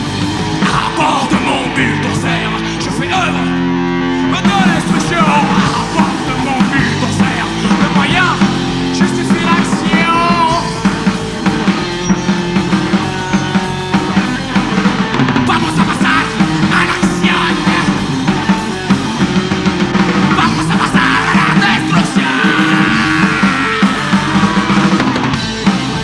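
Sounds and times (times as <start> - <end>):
punk rock band playing live: 0.0 - 26.0.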